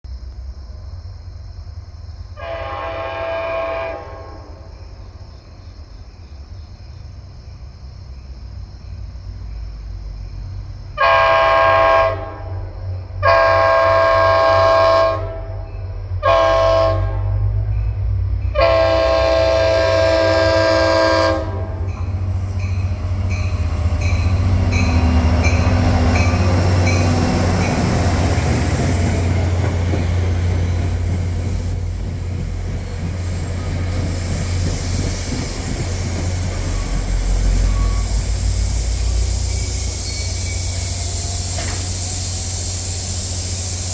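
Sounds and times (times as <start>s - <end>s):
train engine rumble: 0.0s - 43.9s
locomotive horn blasts: 2.4s - 4.6s, 11.0s - 17.5s, 18.6s - 22.2s
wheels clicking on rails: 21.9s - 42.1s.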